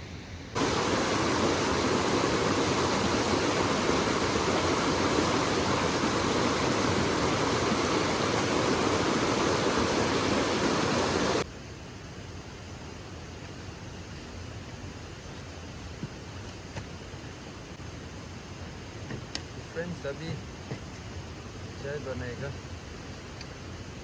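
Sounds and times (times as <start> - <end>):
stream water rushing: 0.6 - 11.4.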